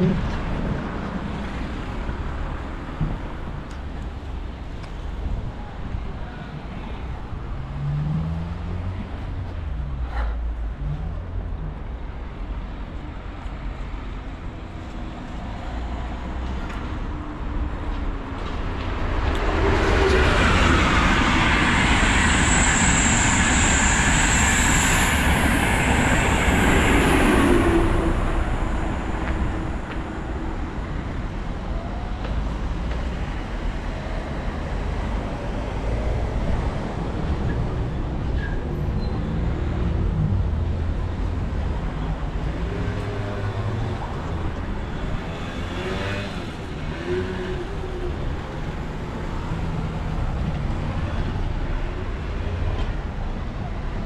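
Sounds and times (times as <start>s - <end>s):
train passing: 12.0s - 54.0s
high squeal: 19.9s - 29.9s.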